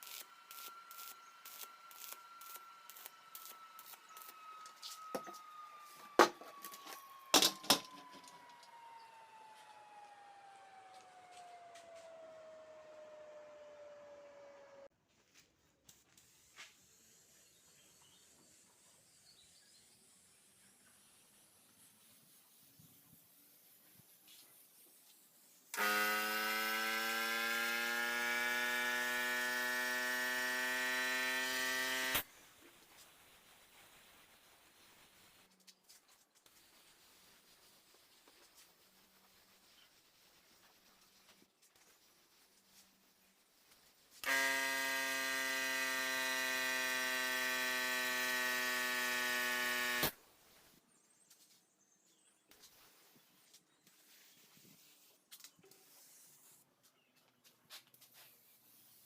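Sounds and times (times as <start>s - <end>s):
power tool motor whining: 0.0s - 14.9s, 25.8s - 32.3s, 44.2s - 50.2s.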